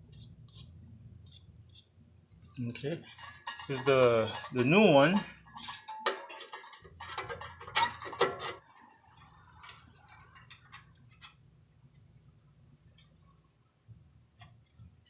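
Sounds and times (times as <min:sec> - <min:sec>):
metal clinks and knocks: 0:02.8 - 0:11.4.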